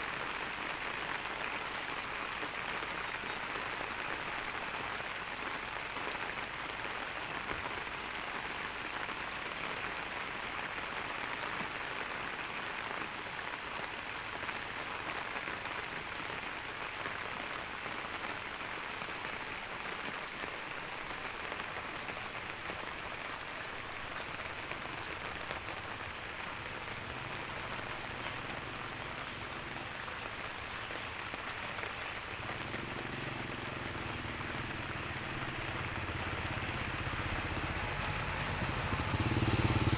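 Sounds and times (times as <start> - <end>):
rain pattering: 0.0 - 39.9.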